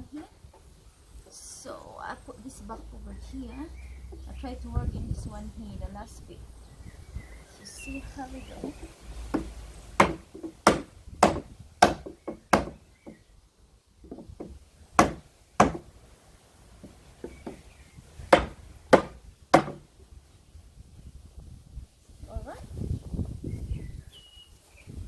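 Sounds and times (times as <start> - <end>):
hammer striking wooden pallet: 8.7 - 13.2, 14.1 - 15.9, 18.3 - 19.9.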